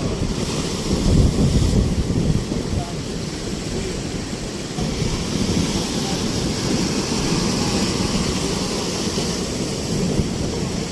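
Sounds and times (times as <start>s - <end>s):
ocean waves breaking on shore: 0.0s - 10.9s
wind buffeting microphone: 0.0s - 10.9s.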